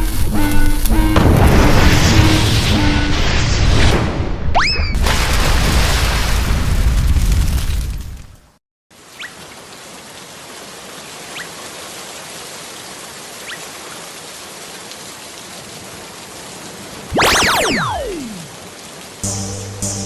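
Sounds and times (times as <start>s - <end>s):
rain-like hiss: 8.9s - 17.1s, 18.1s - 20.0s
falling whistle sound effect: 17.1s - 18.5s.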